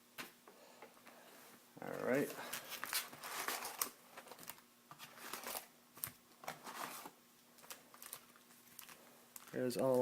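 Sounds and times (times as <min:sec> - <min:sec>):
card packs rustling: 0:02.0 - 0:10.0.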